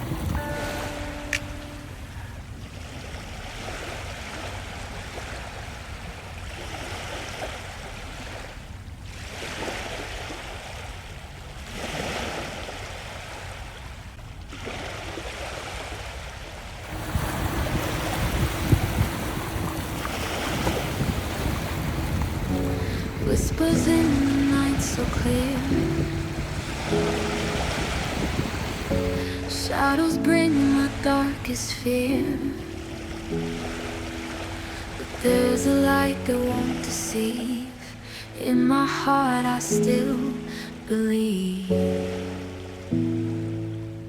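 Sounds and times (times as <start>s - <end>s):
steady low tone: 0.0s - 2.6s, 16.9s - 38.8s
wind buffeting microphone: 0.0s - 6.5s, 16.8s - 30.3s
ocean surf: 0.0s - 44.0s
low rumble: 16.9s - 29.2s.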